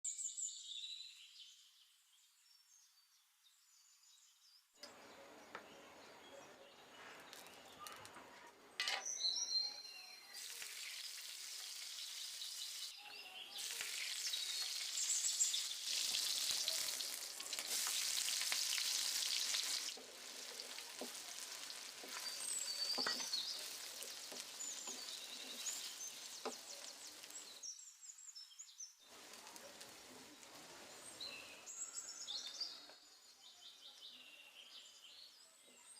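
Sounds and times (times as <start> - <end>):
food sizzling in hot oil: 10.2 - 27.7, 29.1 - 31.8
stirring clicks: 19.7 - 27.5.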